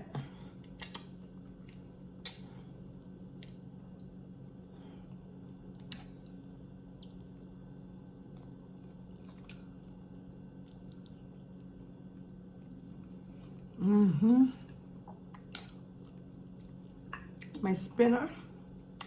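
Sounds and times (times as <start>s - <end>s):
steady low hum: 0.0s - 19.0s
lip-smack clicks: 0.7s - 1.2s.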